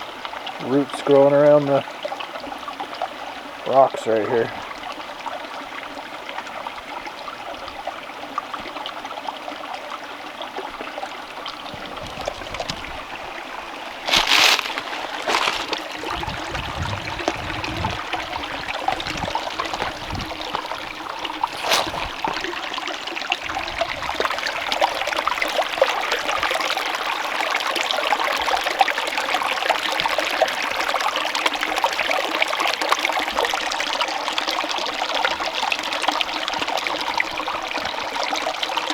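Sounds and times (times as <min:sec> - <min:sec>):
creek trickling over rocks: 0:00.0 - 0:38.9.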